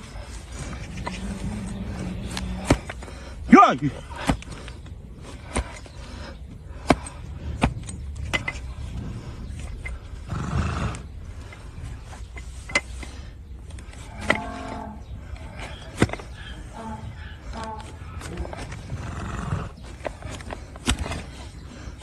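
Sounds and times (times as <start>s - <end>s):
hoof-trimming tools knocking: 6.8s - 8.9s, 12.2s - 14.5s.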